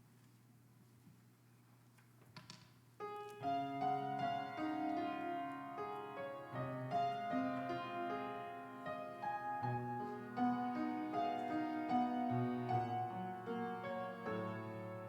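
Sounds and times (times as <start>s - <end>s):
piano sustained chords: 3.4s - 15.0s.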